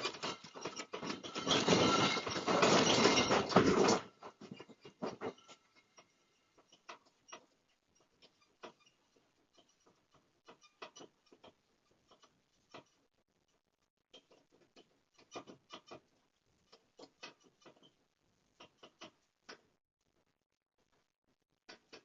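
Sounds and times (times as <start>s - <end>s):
loose objects rattling: 0.0s - 5.6s.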